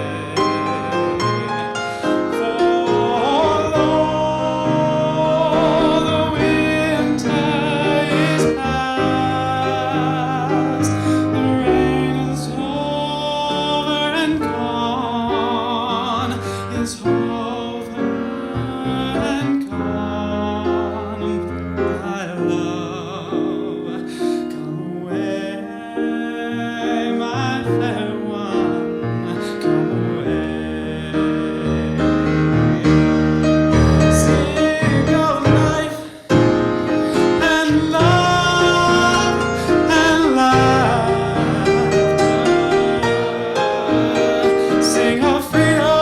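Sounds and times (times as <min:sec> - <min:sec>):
man singing with vibrato: 0:00.0 - 0:46.0
piano accompaniment: 0:00.0 - 0:46.0.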